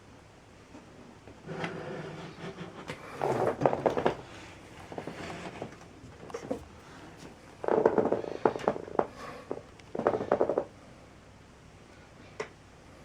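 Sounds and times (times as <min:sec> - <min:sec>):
hard objects rattling and knocking: 0:02.3 - 0:04.2, 0:07.6 - 0:10.7.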